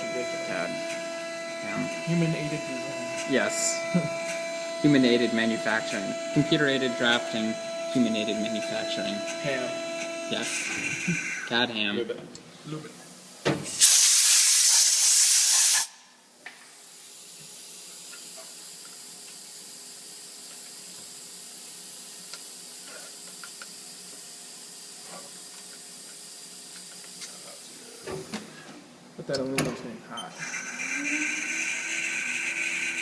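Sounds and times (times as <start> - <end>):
milling machine humming: 0.0 - 11.9, 30.4 - 33.0
hiss of lubricant spray: 13.8 - 15.8.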